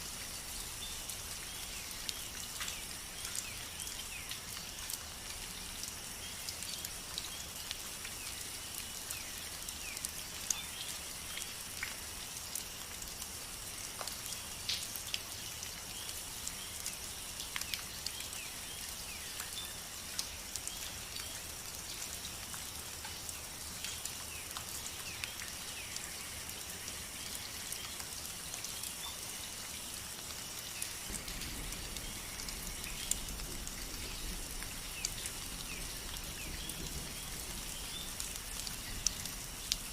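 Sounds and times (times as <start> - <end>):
rain drops ticking: 0.0 - 39.9.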